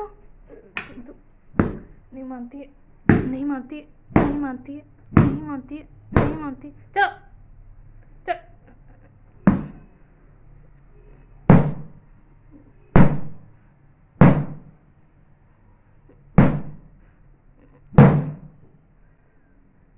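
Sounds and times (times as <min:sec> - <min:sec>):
heavy thumps: 0:01.6 - 0:02.0, 0:03.1 - 0:06.6, 0:09.4 - 0:09.9, 0:11.5 - 0:12.0, 0:14.2 - 0:14.7, 0:18.0 - 0:18.5.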